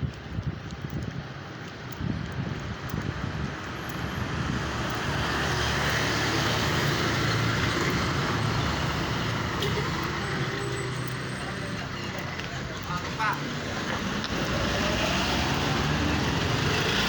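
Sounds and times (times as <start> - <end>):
wind on microphone: 0.0 - 10.2
road traffic: 0.0 - 17.0
vehicle engine: 3.1 - 17.0.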